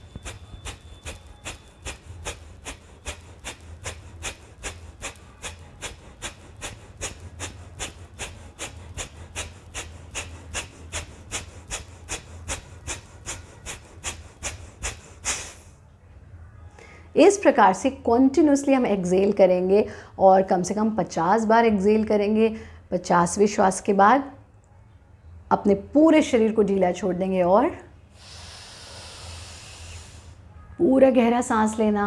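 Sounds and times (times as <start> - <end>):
woman's rapid forceful exhalations: 0.0 - 15.8, 28.1 - 30.4.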